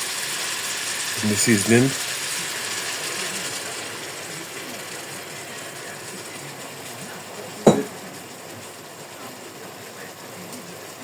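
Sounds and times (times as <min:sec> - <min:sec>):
chicken sizzling in a pot: 0:00.0 - 0:11.0
sharp knock: 0:07.7 - 0:08.0.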